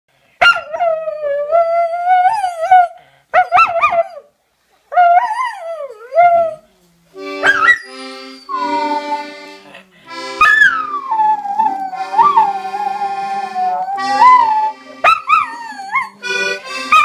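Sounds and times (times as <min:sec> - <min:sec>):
dog howling: 0:10.4 - 0:17.0.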